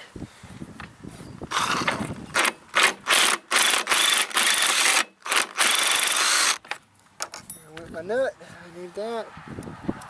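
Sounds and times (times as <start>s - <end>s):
power tool trigger bursts: 1.5s - 6.6s.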